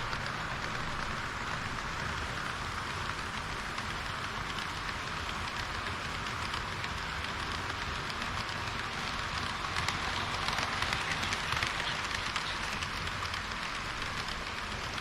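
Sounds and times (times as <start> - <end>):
model train wheels rattling: 0.0 - 15.0.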